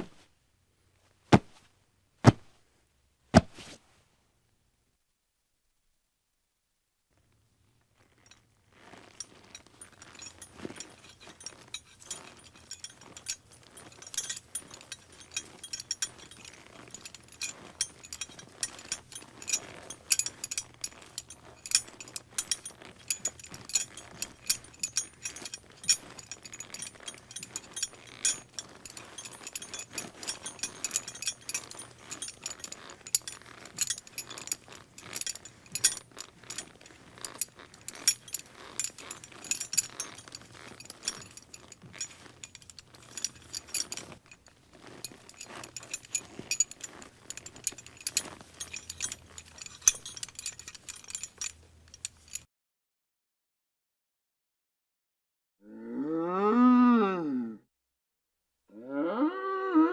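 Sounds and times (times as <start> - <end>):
metallic clinks and rattles: 8.0 - 52.5.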